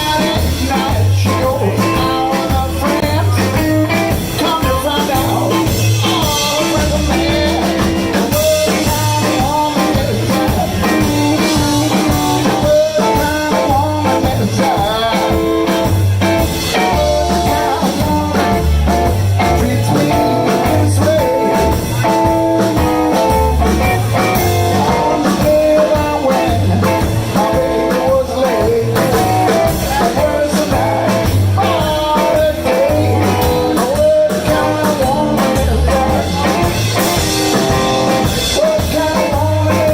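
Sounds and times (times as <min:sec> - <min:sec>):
blues guitar line: 0:00.0 - 0:39.9
person singing: 0:00.0 - 0:39.9
steady drum beat: 0:00.0 - 0:39.9
walking bass: 0:00.0 - 0:39.9.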